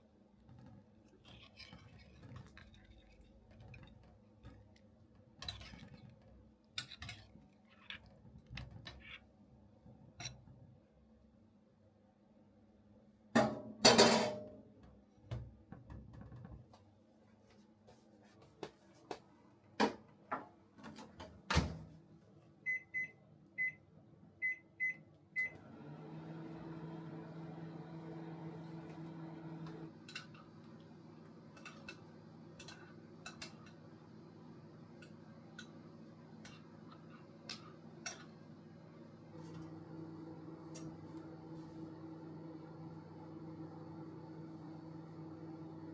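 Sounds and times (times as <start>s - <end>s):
microwave oven humming: 21.0s - 45.9s.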